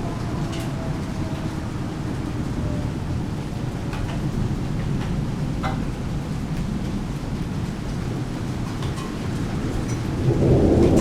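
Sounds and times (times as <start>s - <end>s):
distant tornado siren: 0.0s - 6.9s
rumble of thunder: 0.0s - 11.0s.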